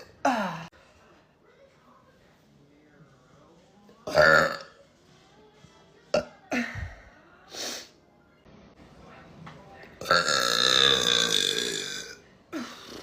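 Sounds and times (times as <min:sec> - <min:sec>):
woman burping: 0:04.0 - 0:04.8, 0:06.1 - 0:06.8, 0:10.0 - 0:13.0.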